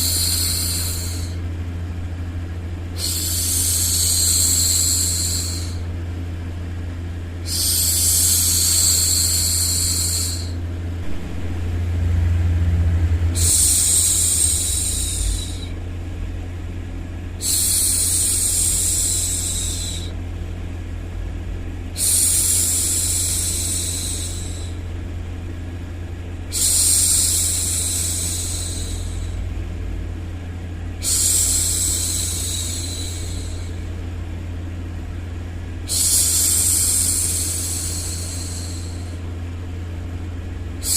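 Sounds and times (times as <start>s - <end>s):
low white-noise hum: 0.0s - 40.9s
woman shushing: 13.3s - 15.8s, 31.0s - 33.8s.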